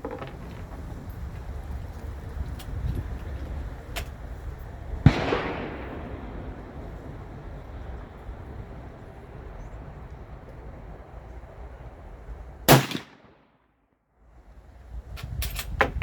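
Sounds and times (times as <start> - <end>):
background noise: 0.0 - 16.0
gunshot: 5.0 - 6.9, 12.7 - 13.4.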